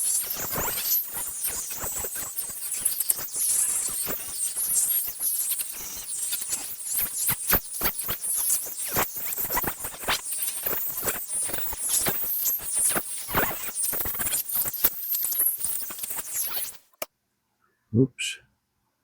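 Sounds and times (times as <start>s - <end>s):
scratching and squeaking parts: 5.6s - 17.1s.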